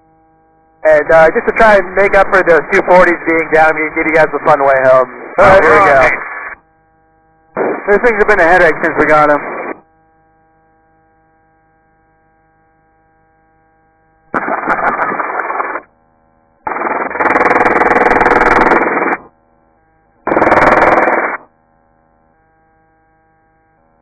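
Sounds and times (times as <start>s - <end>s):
faint intercom hum: 0.8s - 11.4s
machine-gun fire over intercom: 14.4s - 15.8s, 16.7s - 19.3s, 20.3s - 21.4s.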